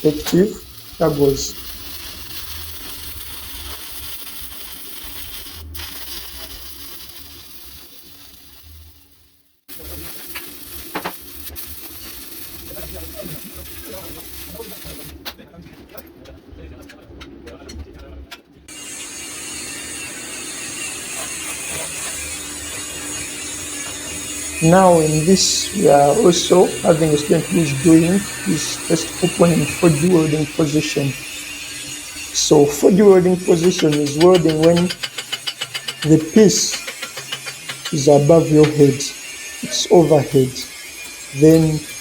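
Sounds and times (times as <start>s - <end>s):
welding arc crackling and hissing: 0.0s - 15.3s, 18.7s - 42.0s
sharp taps: 36.8s - 38.0s.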